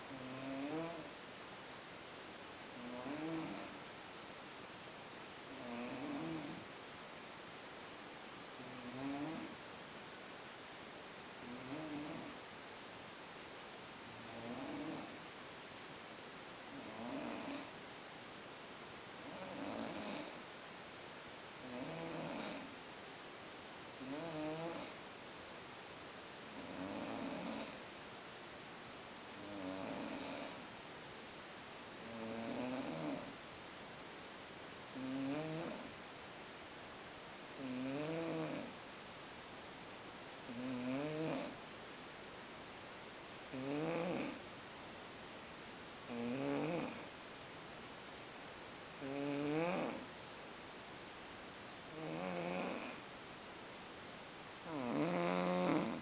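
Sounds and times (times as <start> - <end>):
person snoring: 0.1 - 1.1, 2.8 - 3.8, 5.5 - 6.6, 8.6 - 9.6, 11.4 - 12.4, 14.2 - 15.2, 16.7 - 17.7, 19.2 - 20.4, 21.6 - 22.7, 24.0 - 24.9, 26.6 - 27.8, 29.4 - 30.6, 32.0 - 33.3, 35.0 - 35.9, 37.6 - 38.7, 40.5 - 41.6, 43.5 - 44.4, 46.1 - 47.1, 49.0 - 50.1, 51.9 - 53.0, 54.7 - 56.0.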